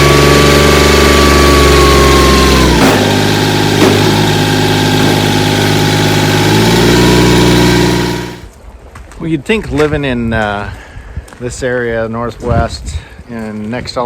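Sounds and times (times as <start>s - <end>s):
tractor diesel engine running: 0.0s - 8.5s.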